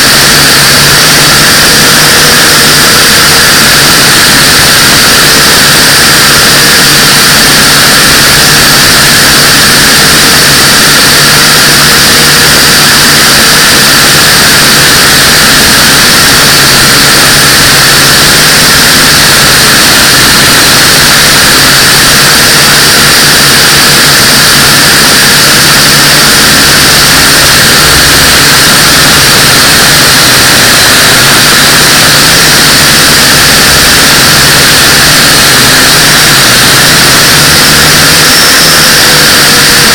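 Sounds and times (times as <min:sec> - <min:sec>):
drone propellers whining: 0:23.8 - 0:29.9.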